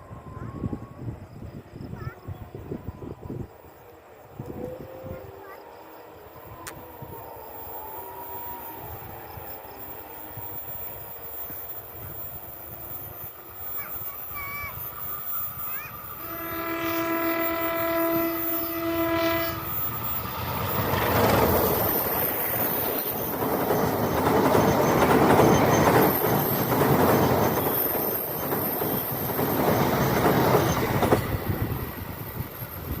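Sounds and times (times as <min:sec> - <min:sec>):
train horn: 0:04.3 - 0:09.1, 0:15.5 - 0:21.8
train wheels clattering on rails: 0:19.7 - 0:33.0.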